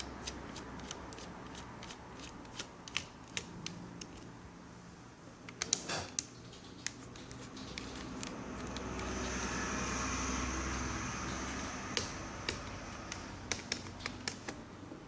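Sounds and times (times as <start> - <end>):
steady rushing noise: 7.1 - 14.4.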